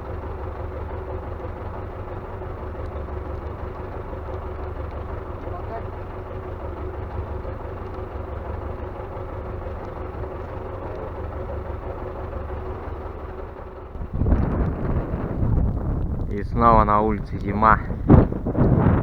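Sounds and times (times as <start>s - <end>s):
engine idling low rumble: 0.0s - 19.0s
wind buffeting microphone: 13.8s - 19.0s.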